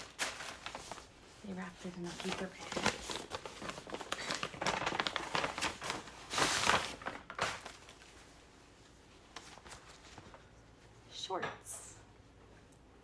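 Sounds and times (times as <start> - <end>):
paper bag crinkling: 0.0 - 8.5, 9.2 - 10.5.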